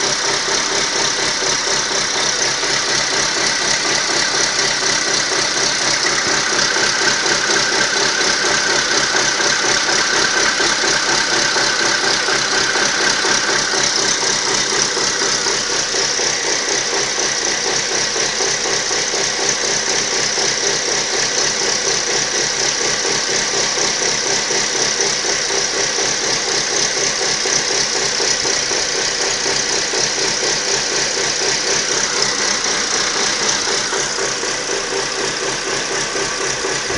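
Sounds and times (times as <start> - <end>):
car engine idling: 0.0 - 36.9.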